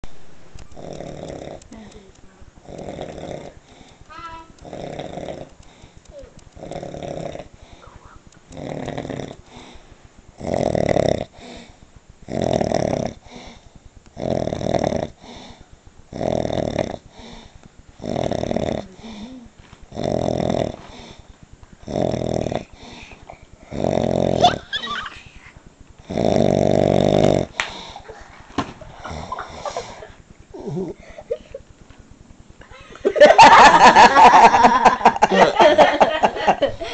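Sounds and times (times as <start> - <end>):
person snoring: 0.8 - 4.0, 4.6 - 28.2, 28.9 - 31.4.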